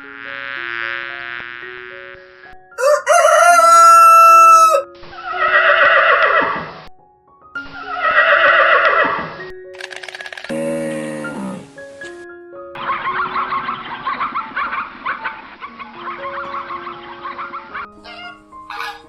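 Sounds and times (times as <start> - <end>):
background music with held notes: 0.0 - 19.0
rooster crowing: 2.8 - 4.9
animal calls with wavering pitch: 12.9 - 19.0.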